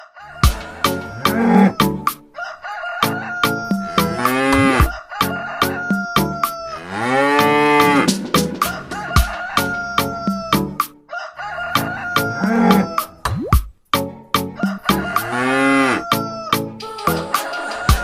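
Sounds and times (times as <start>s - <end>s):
cow mooing: 0.4s - 2.1s, 3.4s - 4.9s, 6.6s - 10.8s, 11.4s - 13.1s, 14.9s - 16.1s
background music with clicking beat: 0.4s - 2.3s, 3.0s - 6.6s, 7.3s - 11.0s, 11.7s - 18.0s.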